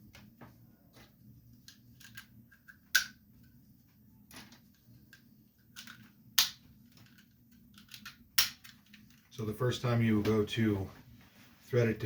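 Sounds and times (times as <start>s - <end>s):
plastic parts clicking together: 5.8s - 9.3s.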